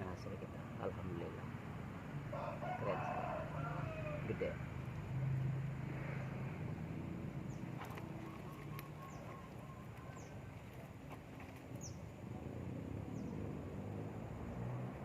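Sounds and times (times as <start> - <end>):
bird chirping: 6.1 - 12.2, 13.0 - 13.9.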